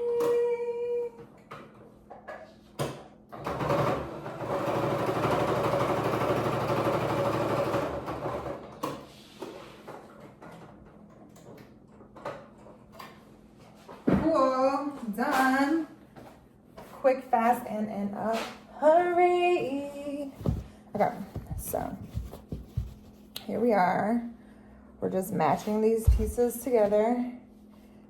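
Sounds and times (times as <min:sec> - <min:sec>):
sewing machine running: 0:03.4 - 0:08.8.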